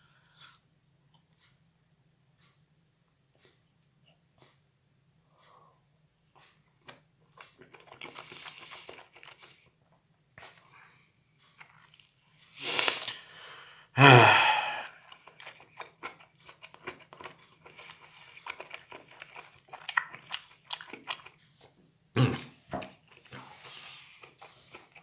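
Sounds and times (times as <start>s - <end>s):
person chewing with wet mouth clicks: 6.4s - 9.7s, 11.4s - 12.2s, 14.8s - 21.7s, 24.2s - 25.0s.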